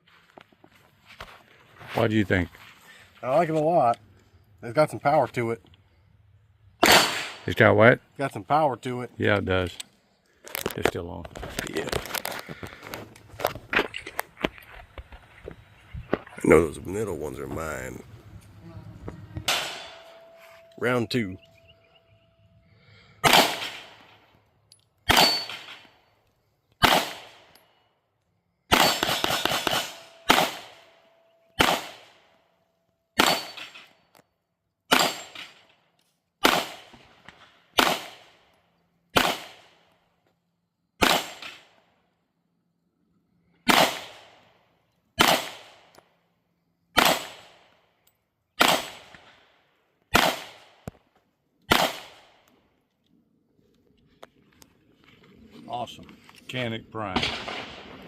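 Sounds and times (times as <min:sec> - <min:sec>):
pistol shots: 0:06.8 - 0:07.5, 0:19.4 - 0:20.2, 0:23.2 - 0:24.2, 0:25.1 - 0:25.8, 0:26.8 - 0:27.5, 0:28.7 - 0:31.0, 0:31.6 - 0:32.2, 0:33.2 - 0:33.7, 0:34.9 - 0:35.6, 0:36.4 - 0:37.1, 0:37.7 - 0:38.4, 0:39.1 - 0:39.8, 0:41.0 - 0:41.8, 0:43.7 - 0:44.4, 0:45.2 - 0:45.9, 0:46.9 - 0:47.8, 0:48.6 - 0:49.4, 0:50.1 - 0:50.9, 0:51.7 - 0:52.4, 0:57.1 - 0:58.0.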